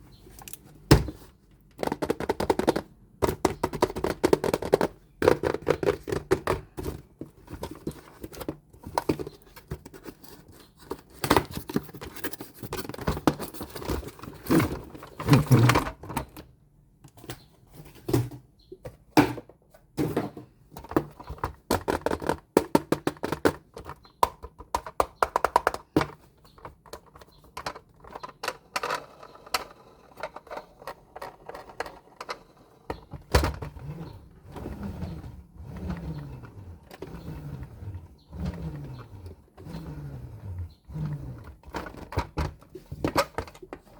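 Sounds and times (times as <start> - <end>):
toys and packaging clicking: 0.3 - 0.8, 1.5 - 16.4, 20.8 - 33.8.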